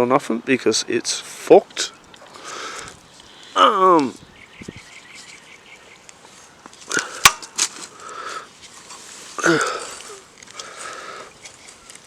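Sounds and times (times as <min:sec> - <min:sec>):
person sighing: 0:09.4 - 0:11.2.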